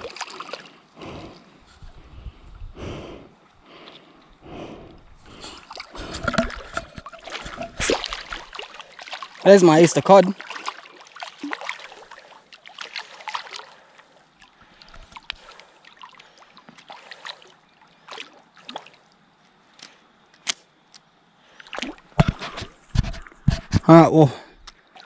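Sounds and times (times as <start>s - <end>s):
water splashing and trickling: 0.0s - 19.9s, 21.4s - 25.0s
fishing gear clicks and knocks: 4.8s - 8.6s, 22.1s - 24.7s.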